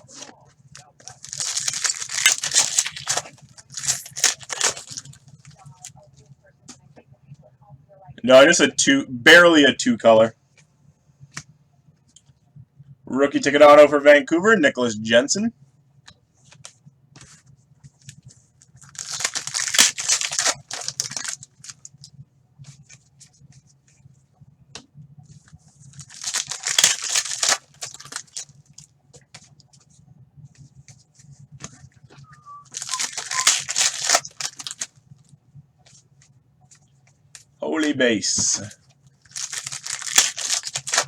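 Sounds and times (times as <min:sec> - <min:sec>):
faint low hum: 0:00.0 - 0:41.0
card pack wrappers tearing: 0:00.8 - 0:05.2, 0:18.8 - 0:21.9, 0:26.0 - 0:28.5, 0:32.7 - 0:34.9, 0:39.3 - 0:41.0
wrapper crinkles and clicks: 0:00.8 - 0:05.5, 0:18.8 - 0:22.0, 0:26.0 - 0:28.6, 0:32.3 - 0:34.9, 0:39.3 - 0:41.0.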